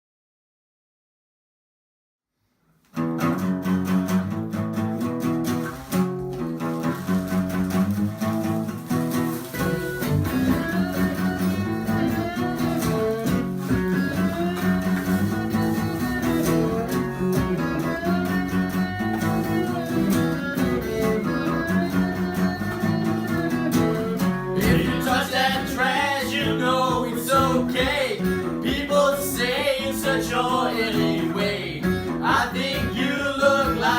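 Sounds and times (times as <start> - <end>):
guitar-led band music: 3.0 - 33.9
person singing: 24.4 - 33.9.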